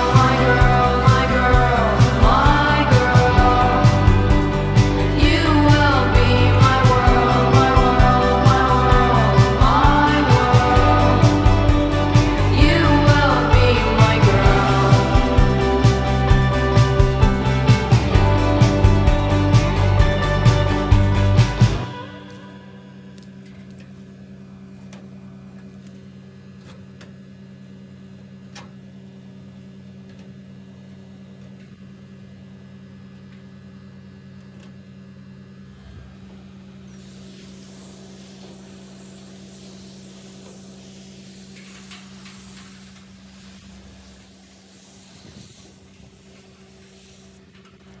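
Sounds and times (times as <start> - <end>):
hissing spray: 0.0 - 22.7, 36.9 - 47.5
air conditioner humming: 0.0 - 26.6, 35.5 - 48.0.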